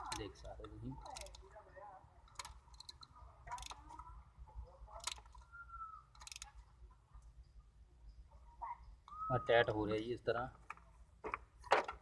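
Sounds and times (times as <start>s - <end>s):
socket ratchet clicking: 1.0s - 1.4s, 2.3s - 4.0s, 6.1s - 6.5s.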